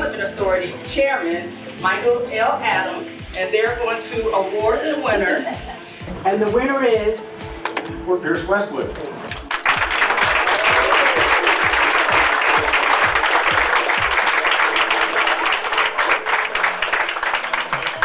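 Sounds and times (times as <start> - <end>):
background music: 0.0 - 18.0
audience applauding: 9.3 - 18.0.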